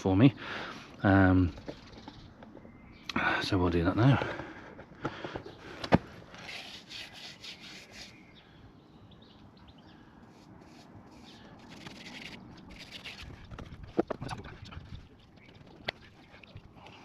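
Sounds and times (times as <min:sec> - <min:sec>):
rubbing strokes on tyre: 0:06.4 - 0:08.4, 0:10.2 - 0:13.8.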